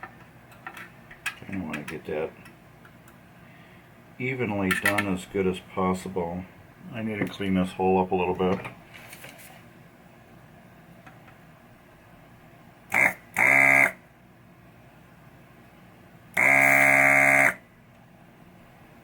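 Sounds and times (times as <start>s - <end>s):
desoldering pump buzzing: 12.9s - 14.0s, 16.3s - 17.6s.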